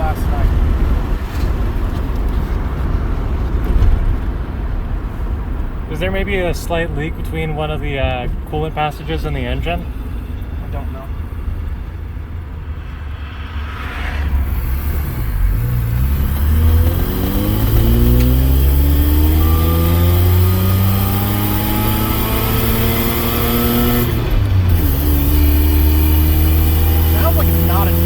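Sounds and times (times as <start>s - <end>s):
vehicle engine pulling under load: 7.1s - 28.0s.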